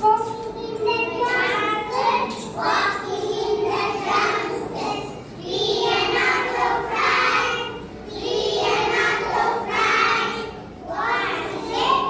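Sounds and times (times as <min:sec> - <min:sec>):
children singing together: 0:00.2 - 0:12.0.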